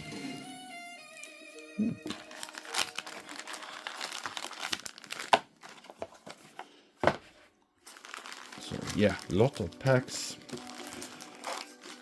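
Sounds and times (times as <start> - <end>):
foil packs crinkling and rustling: 2.1 - 12.0.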